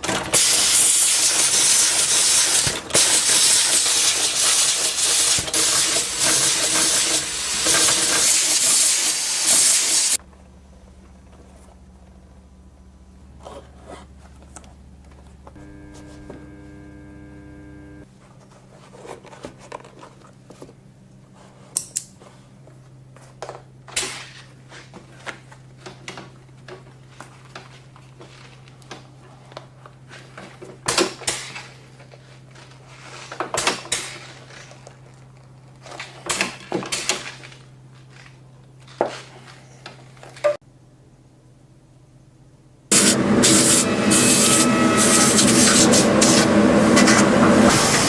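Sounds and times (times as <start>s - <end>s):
steady low hum: 10.2s - 18.1s.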